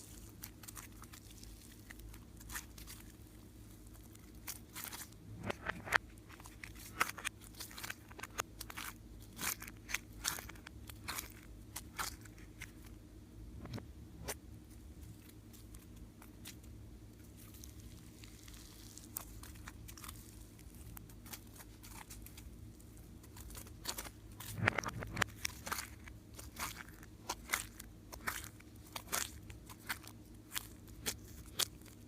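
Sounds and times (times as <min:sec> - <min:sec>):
slime popping and crackling: 0:17.3 - 0:22.5, 0:23.2 - 0:32.0.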